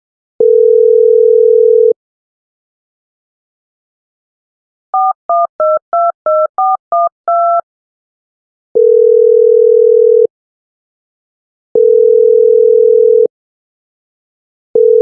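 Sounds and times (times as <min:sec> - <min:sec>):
telephone dialing beeps: 0:00.4 - 0:02.0, 0:05.0 - 0:07.6, 0:08.8 - 0:10.3, 0:11.8 - 0:13.3, 0:14.8 - 0:15.0
telephone ringback tone: 0:00.4 - 0:02.0, 0:05.0 - 0:07.6, 0:08.8 - 0:10.3, 0:11.8 - 0:13.3, 0:14.8 - 0:15.0.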